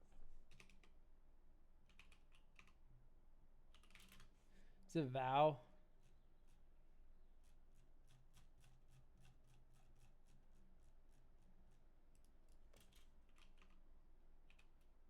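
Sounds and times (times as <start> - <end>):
computer keyboard clicking: 0.5 - 0.9, 1.9 - 2.8, 3.7 - 4.3, 12.2 - 13.8, 14.5 - 14.7.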